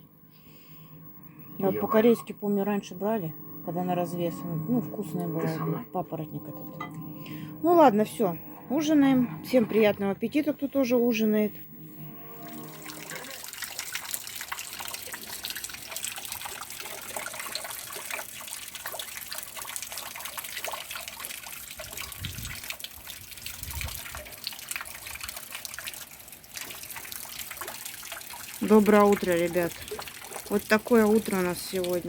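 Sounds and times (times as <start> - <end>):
water drips and patters: 13.0 - 32.0.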